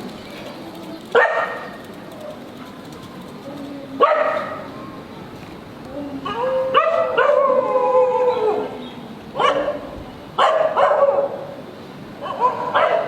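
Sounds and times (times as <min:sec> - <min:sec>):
dog howling: 0:06.2 - 0:08.8
dog barking sharply: 0:09.4 - 0:09.8, 0:10.4 - 0:11.4, 0:12.2 - 0:13.0.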